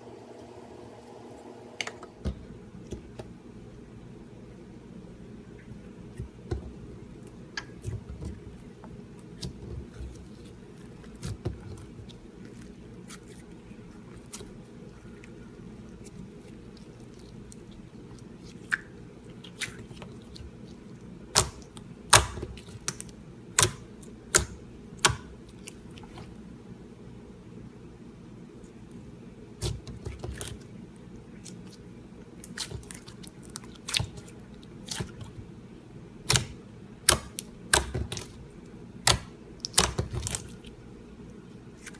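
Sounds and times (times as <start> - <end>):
steady low hum: 0.0 - 41.9
slime clicking and popping: 36.2 - 38.3, 39.0 - 40.5.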